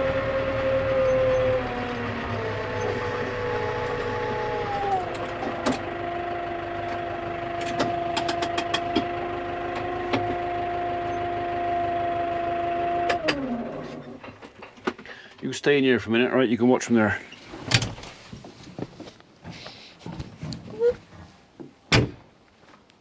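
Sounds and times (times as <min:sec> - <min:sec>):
skid steer engine running: 0:00.0 - 0:14.7
sharp clicks and knocks: 0:07.6 - 0:09.2.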